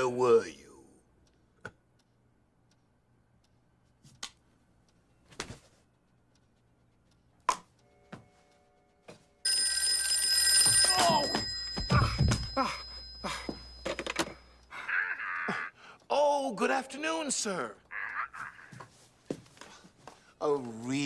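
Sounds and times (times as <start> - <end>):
telephone bell ringing: 9.4 - 14.7.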